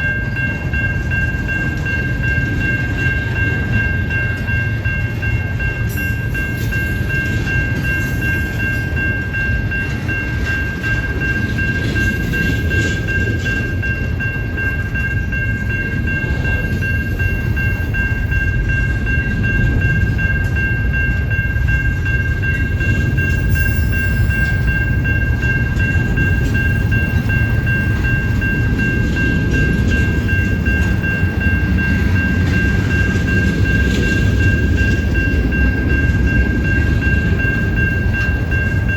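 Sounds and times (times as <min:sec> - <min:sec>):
high-pitched whine: 0:00.0 - 0:38.9
train wheels rumbling on rail: 0:00.0 - 0:38.9.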